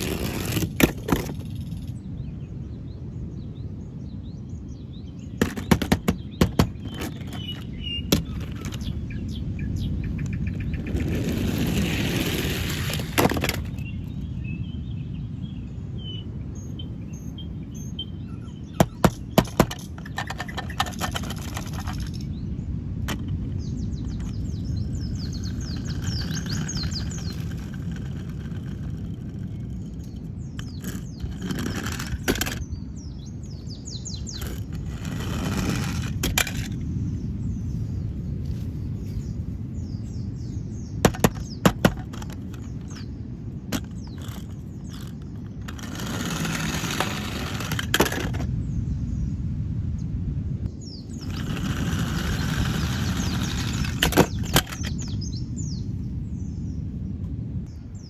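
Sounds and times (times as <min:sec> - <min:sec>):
low background rumble: 0:00.0 - 0:58.0
rustling: 0:24.1 - 0:32.6, 0:34.2 - 0:36.8.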